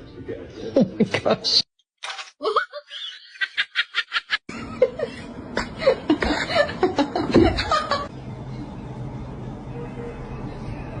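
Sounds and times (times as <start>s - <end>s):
people laughing: 0.8s - 1.7s, 2.4s - 8.1s.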